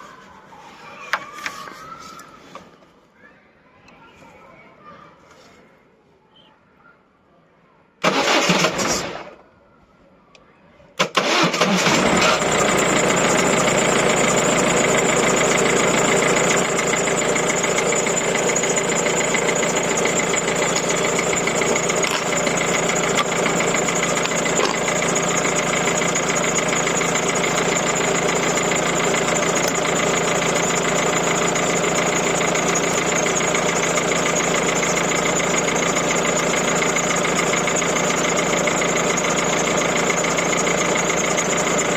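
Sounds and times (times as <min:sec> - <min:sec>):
diesel engine burst: 0:08.0 - 0:09.4, 0:11.0 - 0:41.9
diesel engine starting and idling: 0:08.0 - 0:09.4, 0:11.0 - 0:41.9.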